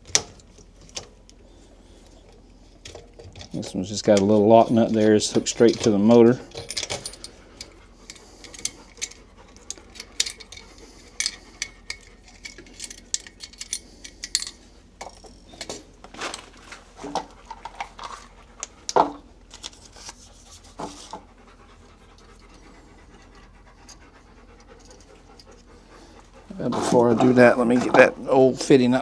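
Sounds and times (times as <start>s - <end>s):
light metal clinks of tools: 2.1s - 16.6s
dog panting: 4.5s - 12.4s, 20.4s - 27.6s.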